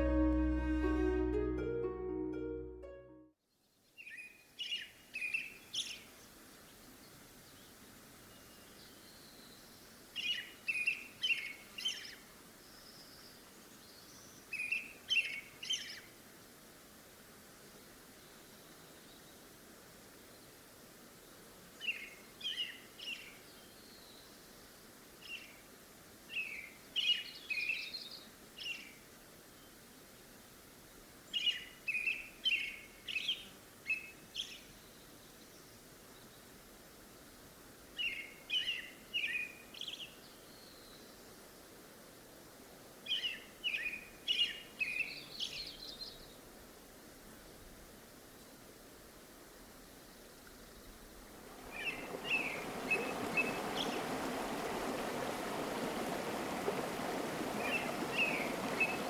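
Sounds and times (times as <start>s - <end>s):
songbird singing: 0.0s - 6.1s, 50.6s - 59.0s
faint outdoor background hiss: 0.0s - 59.0s.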